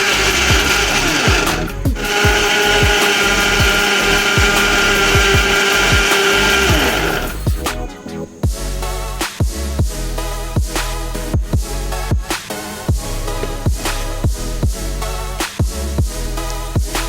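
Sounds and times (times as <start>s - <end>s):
electric mixer grinder whirring: 0.0s - 7.6s.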